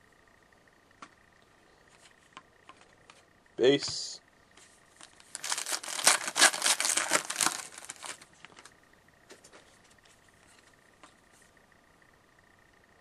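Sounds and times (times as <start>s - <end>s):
foil wrapper tearing and crinkling: 5.0s - 8.7s.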